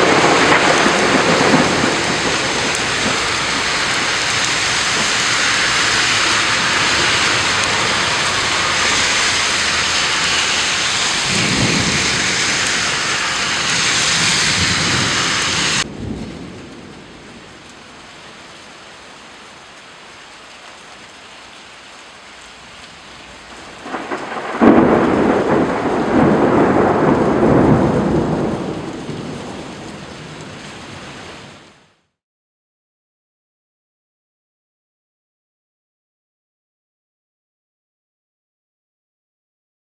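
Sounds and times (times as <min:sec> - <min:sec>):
loud thunderclap: 0:00.0 - 0:17.6, 0:23.8 - 0:29.8
thunder rumbling: 0:00.0 - 0:18.2, 0:23.3 - 0:31.1
heavy rain falling: 0:00.0 - 0:32.1.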